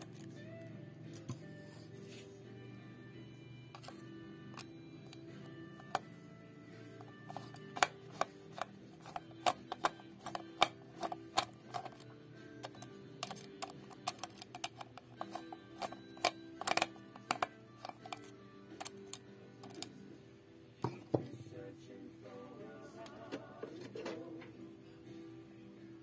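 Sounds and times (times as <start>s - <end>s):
low background music: 0.0s - 26.0s
sharp clicks of plastic parts: 7.3s - 19.9s.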